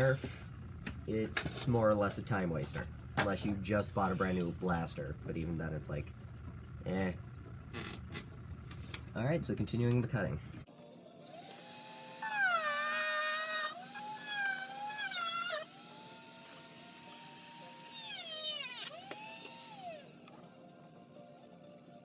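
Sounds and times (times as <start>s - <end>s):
rotary tool cutting plastic: 11.2s - 20.4s.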